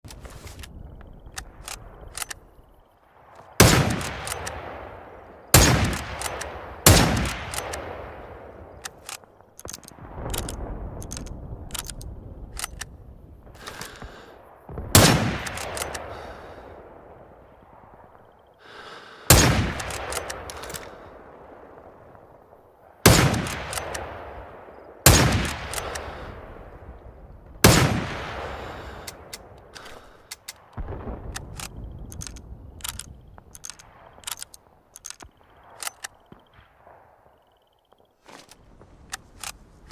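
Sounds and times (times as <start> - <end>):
rifle bolt clicks and rattles: 0.0 - 2.4, 3.4 - 4.6, 5.6 - 7.9, 8.8 - 12.9, 13.6 - 14.1, 15.4 - 16.1, 19.7 - 21.0, 23.4 - 24.0, 25.4 - 26.1, 29.0 - 36.3, 38.3 - 39.9
rifle shots echoing: 3.4 - 12.9, 13.5 - 37.4.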